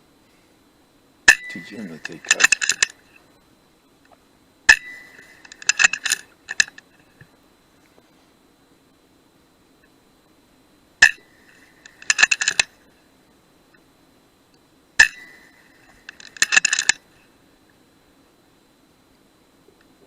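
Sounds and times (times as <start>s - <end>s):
air rifle shot with ringing: 1.3s - 2.9s, 4.7s - 6.2s, 15.0s - 15.5s.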